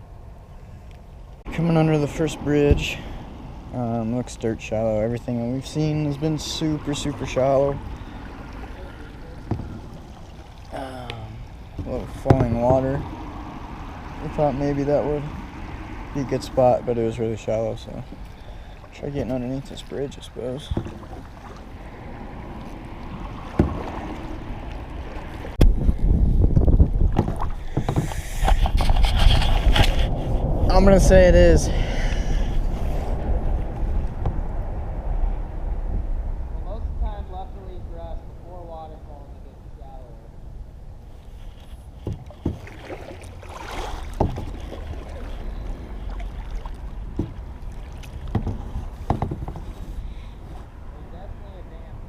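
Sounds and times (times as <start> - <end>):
steady low rumble: 0.0 - 42.0
paddle and hull knocks: 1.5 - 4.4, 5.6 - 30.1, 33.7 - 34.6, 41.5 - 50.0
short knocks: 11.7 - 13.0, 20.7 - 21.6, 23.5 - 24.0, 42.0 - 42.9, 44.1 - 44.8, 47.1 - 49.9.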